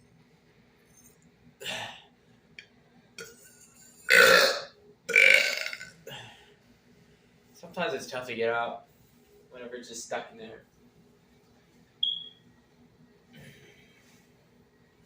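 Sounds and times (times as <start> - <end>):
man burping: 1.6 - 2.0, 3.2 - 6.4.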